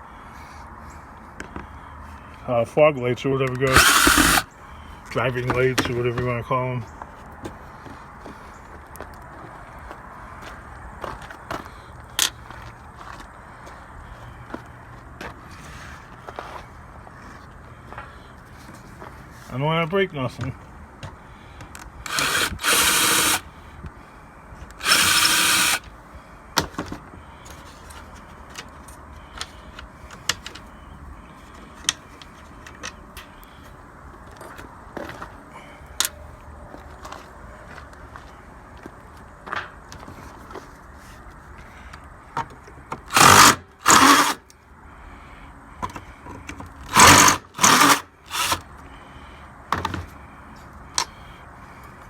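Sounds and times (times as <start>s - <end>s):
power drill running: 3.7s - 4.5s, 22.1s - 23.5s, 24.7s - 25.9s, 43.1s - 44.4s, 46.9s - 48.6s.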